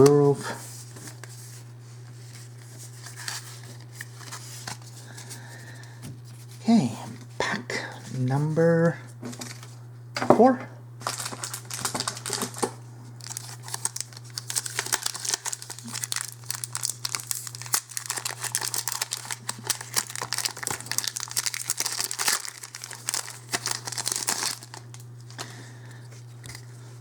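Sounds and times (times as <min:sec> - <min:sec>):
steady low hum: 0:00.0 - 0:27.0
wrapper crinkling and tearing: 0:02.2 - 0:04.9, 0:11.0 - 0:25.6.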